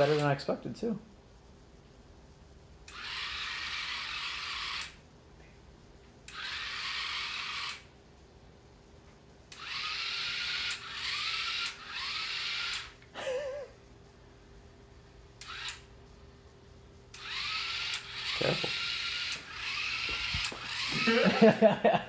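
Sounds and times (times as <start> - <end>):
small gear motors whirring: 0.0 - 0.3, 2.9 - 5.0, 6.3 - 7.9, 9.5 - 13.0, 15.4 - 15.9, 17.1 - 21.6.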